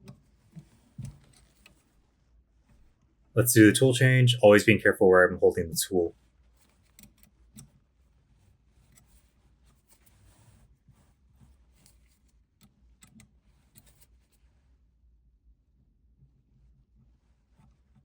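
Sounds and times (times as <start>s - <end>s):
faint clicks and scrapes: 0.0s - 3.1s, 6.5s - 14.6s.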